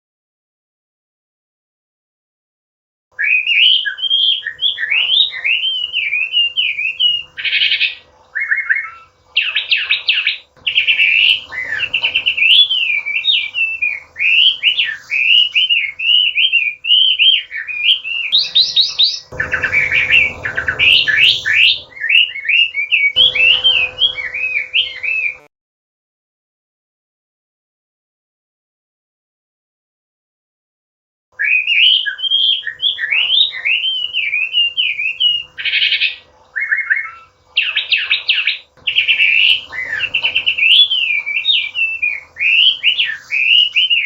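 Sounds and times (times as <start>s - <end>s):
bird singing whistled phrases: 3.2s - 25.5s, 31.4s - 44.0s.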